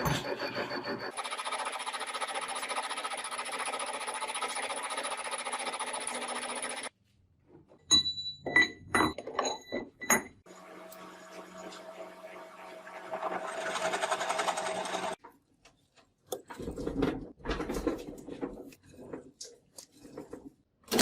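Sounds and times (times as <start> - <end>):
file rubbing on metal: 0.0 - 1.6.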